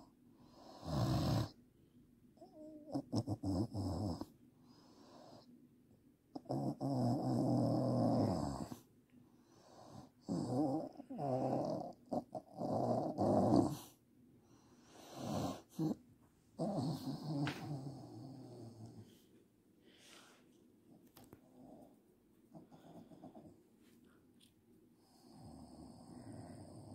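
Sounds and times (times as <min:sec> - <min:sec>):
woman snoring: 0:00.6 - 0:01.6, 0:06.5 - 0:08.8, 0:10.3 - 0:13.8, 0:15.1 - 0:16.0, 0:16.6 - 0:19.0.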